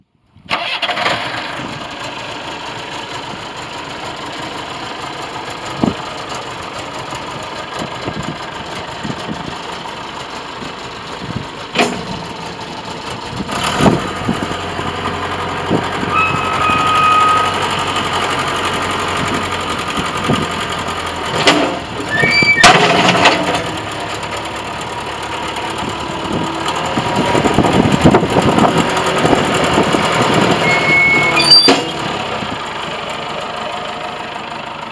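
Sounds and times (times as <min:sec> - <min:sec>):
diesel engine running: 0:00.5 - 0:34.9
short high whine: 0:16.1 - 0:17.9, 0:30.6 - 0:32.0.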